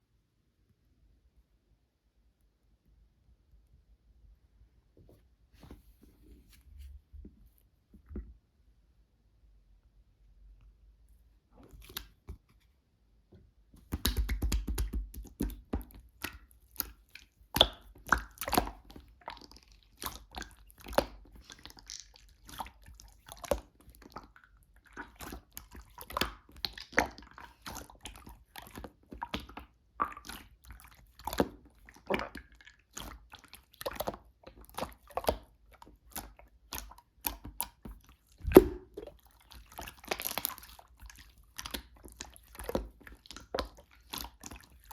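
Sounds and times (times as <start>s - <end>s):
slime squeezed with sticky pops: 13.8s - 24.1s, 25.0s - 44.9s.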